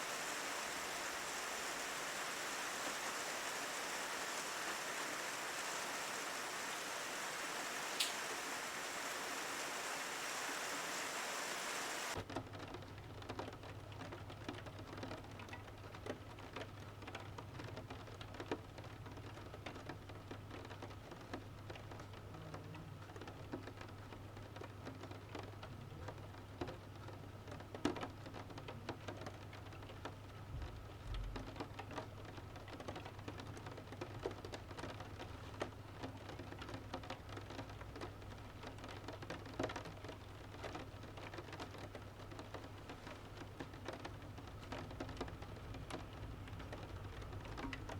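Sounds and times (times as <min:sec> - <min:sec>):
low steady hum: 0:00.0 - 0:12.2
rain drops ticking on hard surface: 0:00.0 - 0:47.9.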